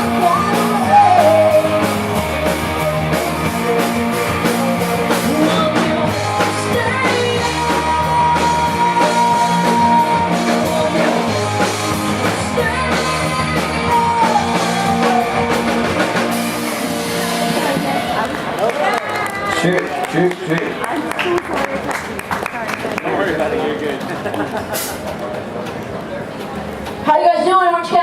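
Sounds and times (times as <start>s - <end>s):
person singing: 0.0s - 18.2s
bass guitar: 0.0s - 18.6s
drums: 0.0s - 18.6s
electric guitar: 0.0s - 19.6s.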